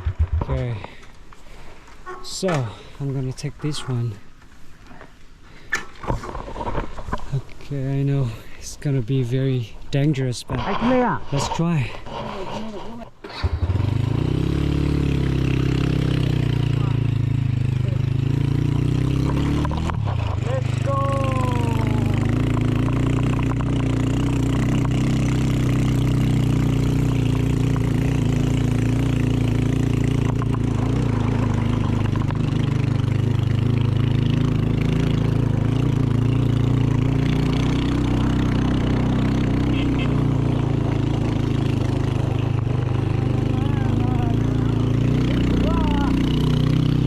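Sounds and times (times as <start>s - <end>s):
motorbike engine running: 13.4s - 47.0s.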